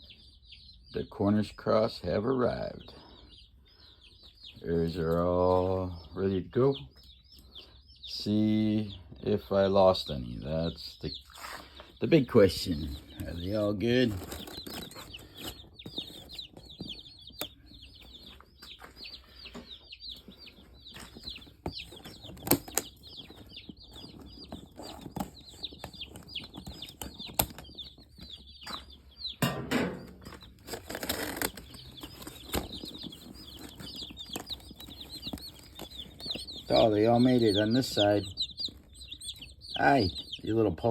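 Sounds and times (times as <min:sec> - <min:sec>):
chicks peeping: 0:00.0 - 0:40.9
scuffling noise: 0:11.2 - 0:11.9, 0:18.0 - 0:28.9, 0:30.0 - 0:38.0
knocks: 0:29.4 - 0:30.4.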